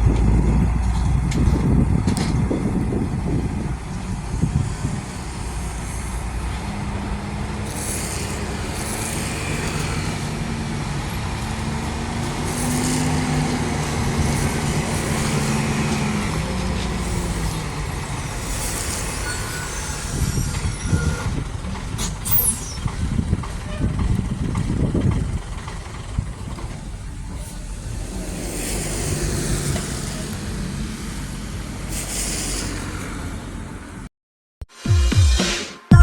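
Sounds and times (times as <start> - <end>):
diesel truck engine running: 0.0 - 31.9
air brake hisses: 7.7 - 10.2, 16.9 - 21.4, 31.2 - 33.5.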